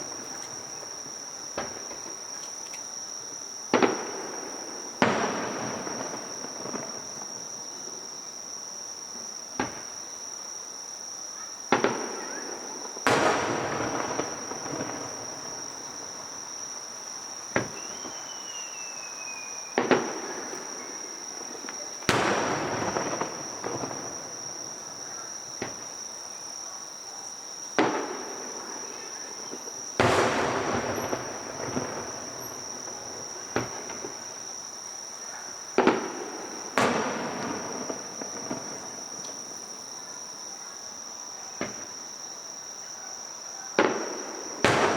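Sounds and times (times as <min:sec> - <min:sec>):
fireworks crackle: 0:00.0 - 0:02.9, 0:03.7 - 0:07.8, 0:11.7 - 0:26.1, 0:27.8 - 0:40.0, 0:43.8 - 0:44.9
fireworks bangs: 0:00.0 - 0:08.0, 0:09.2 - 0:10.0, 0:11.7 - 0:26.1, 0:27.7 - 0:40.0, 0:43.8 - 0:44.9.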